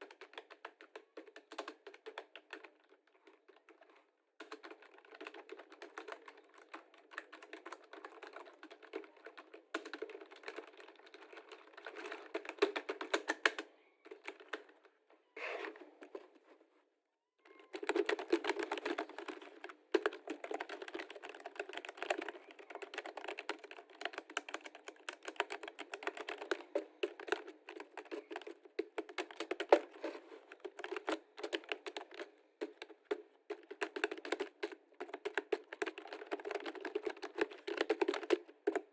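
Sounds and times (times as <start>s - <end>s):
keyboard typing clicks: 17.5s - 38.9s.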